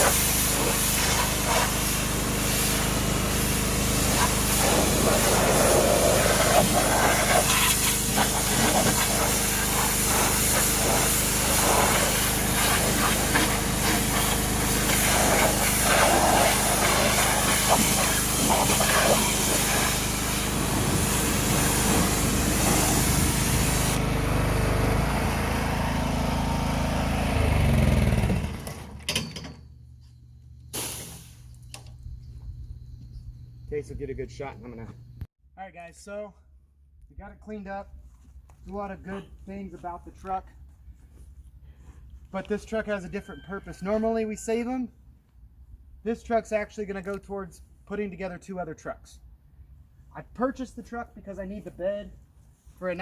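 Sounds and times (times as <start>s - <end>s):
water jet hissing: 0.0s - 24.0s, 30.8s - 31.5s
pressure washer engine running: 0.0s - 28.7s.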